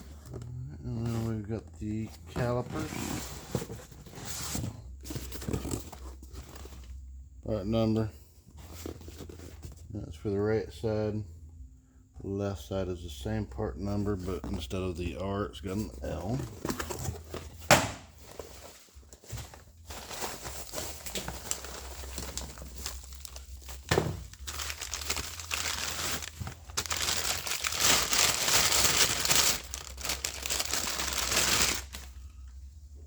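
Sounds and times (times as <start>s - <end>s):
packaging crinkling: 18.3s - 32.3s.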